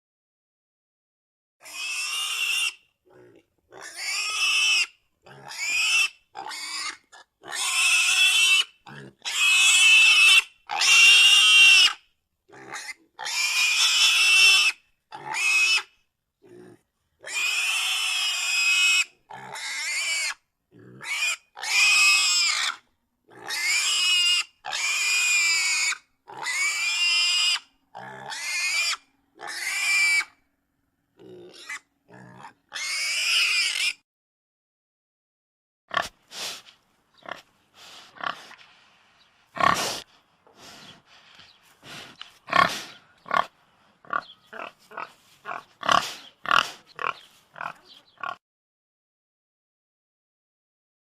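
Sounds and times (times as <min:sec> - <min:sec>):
pig squealing: 0:01.6 - 0:15.9, 0:16.5 - 0:30.4, 0:31.2 - 0:34.0, 0:44.1 - 0:48.4.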